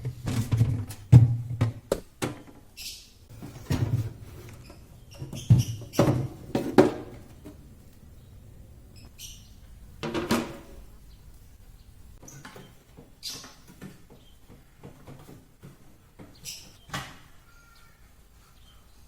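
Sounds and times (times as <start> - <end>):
containers knocking and clattering: 5.2 - 7.7, 10.0 - 10.9.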